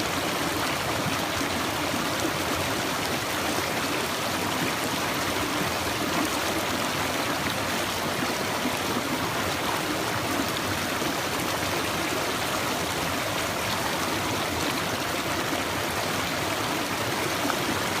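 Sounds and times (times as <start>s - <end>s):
water running over rocks: 0.0s - 18.0s.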